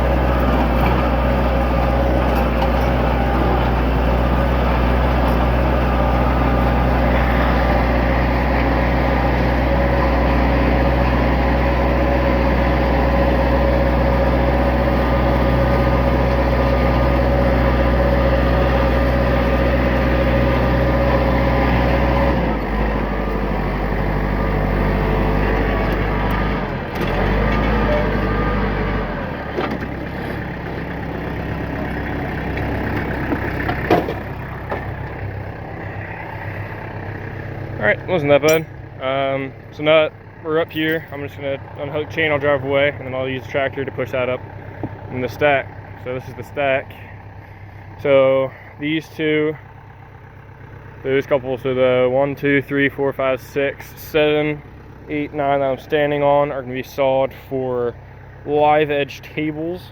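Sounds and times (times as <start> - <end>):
tractor engine running: 0.0 - 59.9.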